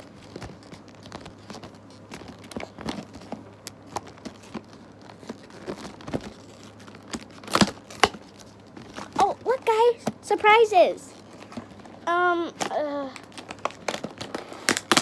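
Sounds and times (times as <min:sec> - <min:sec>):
packaging wrap crinkling and tearing: 0:00.0 - 0:09.5, 0:11.1 - 0:15.0
sharp crackles: 0:12.6 - 0:15.0.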